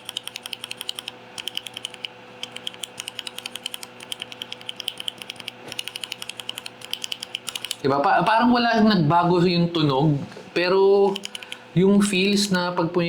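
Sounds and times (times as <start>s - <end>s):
mechanical keyboard keystrokes: 0.0s - 7.8s, 11.1s - 11.6s.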